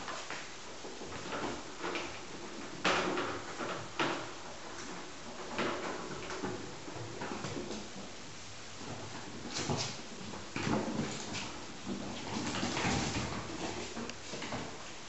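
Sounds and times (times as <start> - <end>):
kittens scrabbling on floor: 8.8 - 15.0.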